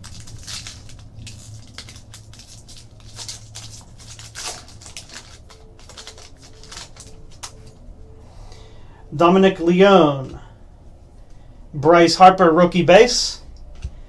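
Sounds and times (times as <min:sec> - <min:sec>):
foil wrapper crinkling: 0:00.0 - 0:07.8.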